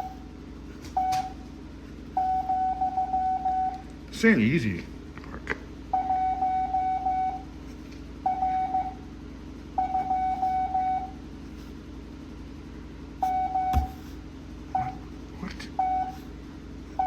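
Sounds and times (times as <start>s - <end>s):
morse code beeps: 2.2s - 3.8s, 8.2s - 9.0s, 9.8s - 11.2s, 13.2s - 14.0s, 14.7s - 15.0s, 15.8s - 16.1s
knock: 13.7s - 14.0s.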